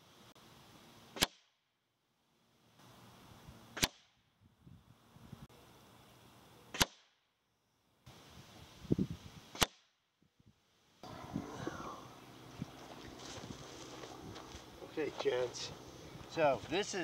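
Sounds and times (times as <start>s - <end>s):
air rifle shots: 6.7s - 7.2s.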